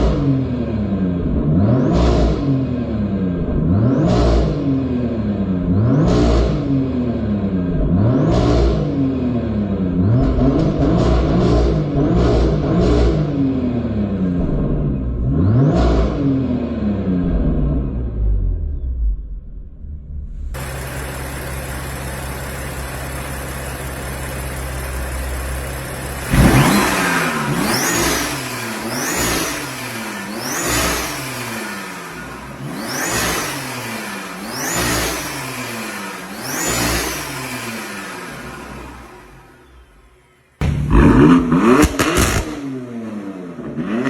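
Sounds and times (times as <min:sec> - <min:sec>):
car engine idling and revving: 0:00.0 - 0:44.0.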